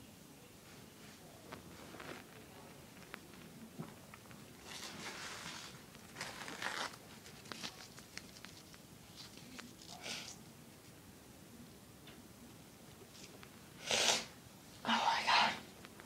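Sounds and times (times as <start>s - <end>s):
small clicks and rustles: 1.0s - 11.0s.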